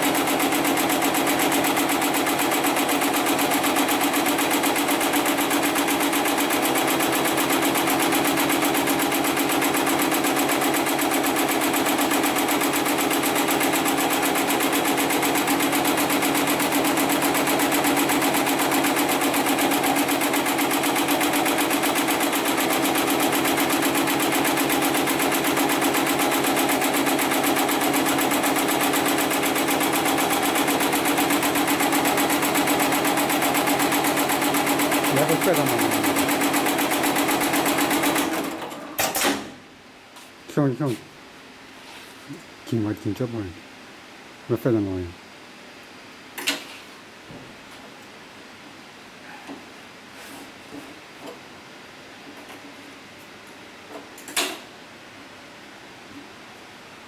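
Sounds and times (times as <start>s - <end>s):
sewing machine stitching: 0.0s - 39.3s.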